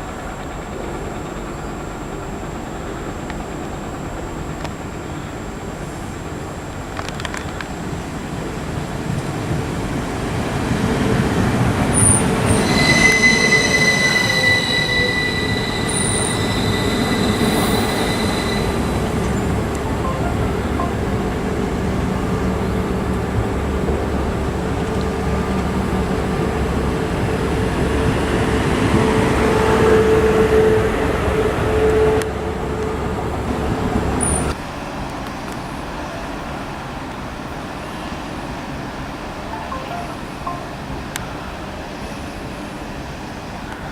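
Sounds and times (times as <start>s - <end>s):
train wheels rumbling on rails: 0.0s - 37.8s
train wheel squeal: 11.9s - 20.3s, 27.4s - 33.0s, 34.2s - 34.6s.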